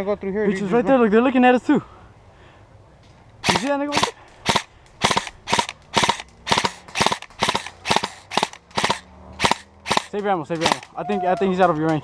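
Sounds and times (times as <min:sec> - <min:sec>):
airsoft gun single shots: 0:03.4 - 0:10.9.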